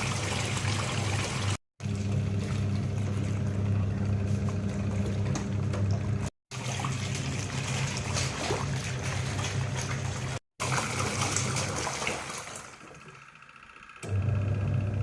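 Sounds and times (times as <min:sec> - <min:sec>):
water splashing and trickling: 0:00.0 - 0:03.4, 0:05.8 - 0:13.2
washing machine motor hum: 0:00.0 - 0:15.0.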